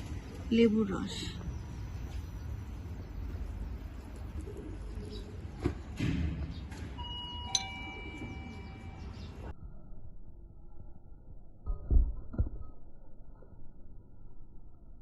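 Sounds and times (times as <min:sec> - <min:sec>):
spoon clinking teacup: 0:07.5 - 0:07.9.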